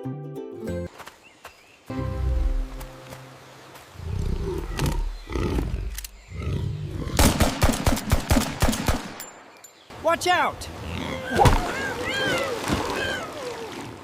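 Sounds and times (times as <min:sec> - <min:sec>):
cartoon animal growling and roaring: 0:04.0 - 0:07.3, 0:10.8 - 0:12.4.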